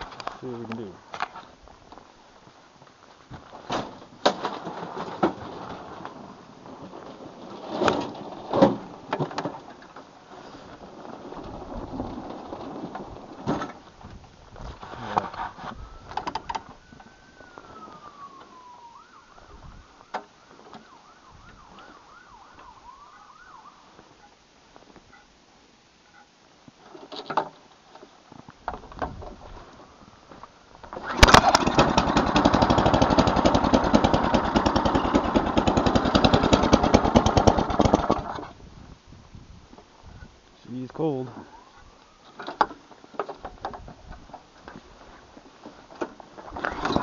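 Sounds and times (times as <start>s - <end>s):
siren wailing and yelping: 15.8s - 24.4s, 41.4s - 42.3s.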